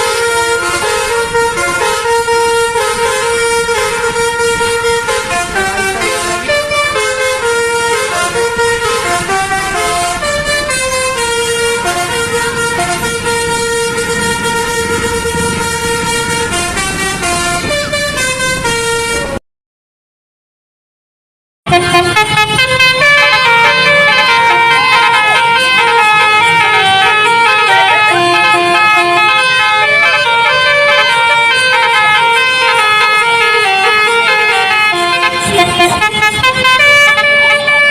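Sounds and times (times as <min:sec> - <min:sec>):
musical bus horn melody: 0:00.0 - 0:19.4, 0:21.7 - 0:37.9.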